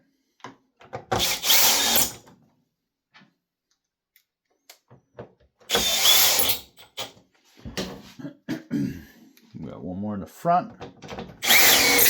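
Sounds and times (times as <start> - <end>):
cordless drill running: 1.2 - 2.2, 5.7 - 6.6, 11.4 - 12.0.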